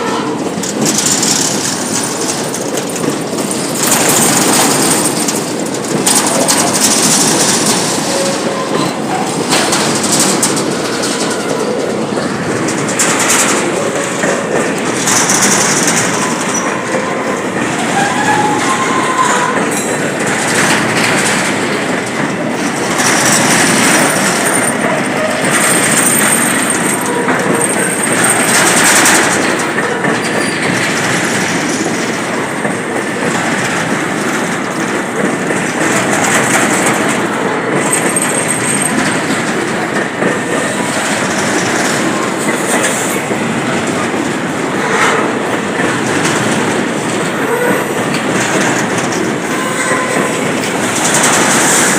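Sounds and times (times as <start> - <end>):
train cars rumbling: 0.0 - 51.9
wheels clacking over rail joints: 0.0 - 51.9
high wheel squeals: 16.1 - 19.6.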